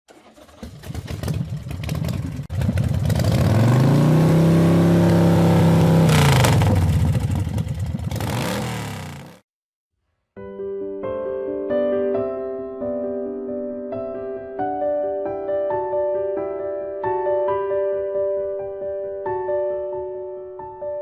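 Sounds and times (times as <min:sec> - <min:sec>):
motorcycle engine revving: 0:00.1 - 0:09.4.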